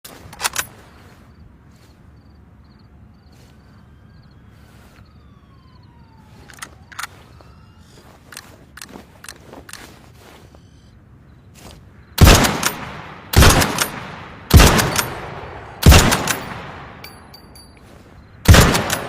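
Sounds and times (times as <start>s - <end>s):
faint background noise: 0.1s - 19.0s
sharp clicks: 0.2s - 0.8s, 6.4s - 7.2s, 18.5s - 19.0s.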